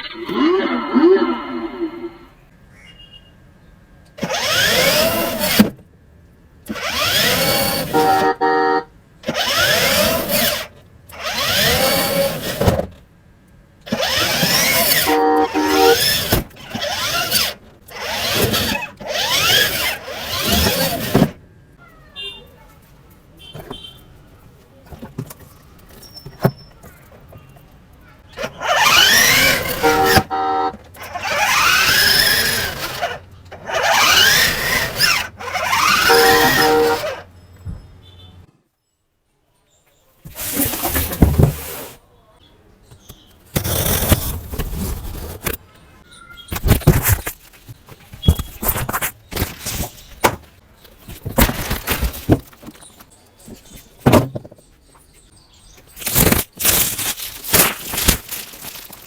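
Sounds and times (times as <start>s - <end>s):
small electric motor whirring: 4.2s - 5.7s, 6.7s - 8.3s, 9.2s - 12.7s, 13.9s - 21.3s, 28.4s - 37.2s
beeping horn tones: 7.8s - 8.9s, 14.8s - 16.2s, 29.0s - 30.9s, 35.6s - 38.5s.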